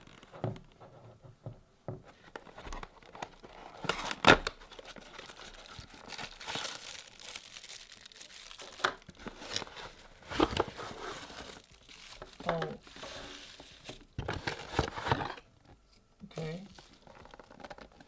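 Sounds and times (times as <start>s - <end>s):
packaging crinkling and tearing: 2.4s - 15.4s, 16.7s - 18.0s.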